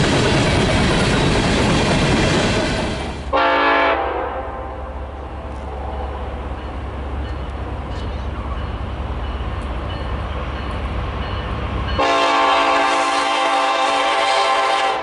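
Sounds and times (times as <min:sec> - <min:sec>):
train rumbling past: 0:00.0 - 0:15.0
train horn blowing: 0:03.3 - 0:06.2, 0:12.0 - 0:15.0.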